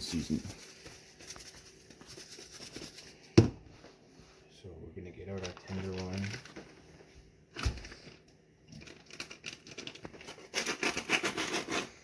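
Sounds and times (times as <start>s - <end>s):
plastic bag crinkling: 5.2s - 6.9s, 7.5s - 11.2s.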